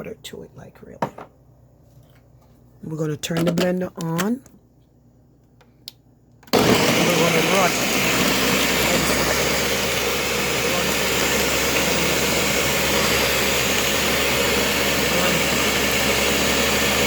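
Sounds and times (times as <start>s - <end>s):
countertop blender grinding: 6.5s - 17.0s.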